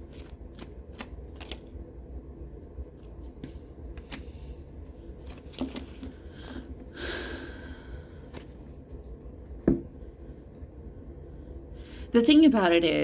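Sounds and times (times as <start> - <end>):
cards clicking and tapping: 0.1 - 1.6.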